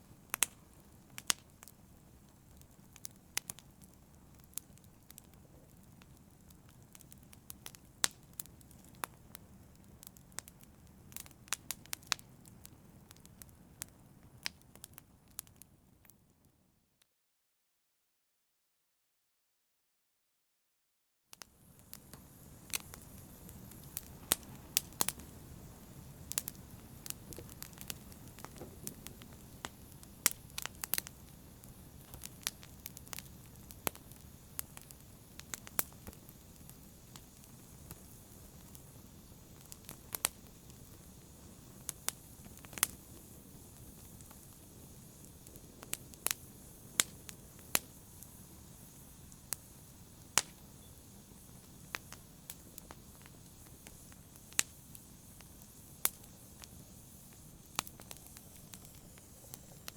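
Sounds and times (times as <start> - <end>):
fire crackling: 0.0 - 16.4, 21.4 - 59.9.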